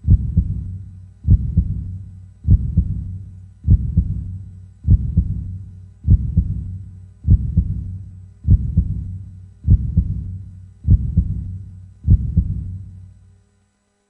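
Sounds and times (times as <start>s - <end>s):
heartbeat double beats: 0.0s - 13.1s
low hum: 0.0s - 13.6s.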